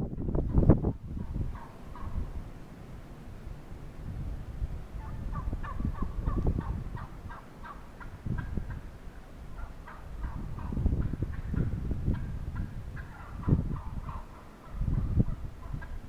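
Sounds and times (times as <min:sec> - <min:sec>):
wind rumbling on microphone: 0:00.0 - 0:16.0
turkey gobbling: 0:01.2 - 0:02.3, 0:05.0 - 0:16.0.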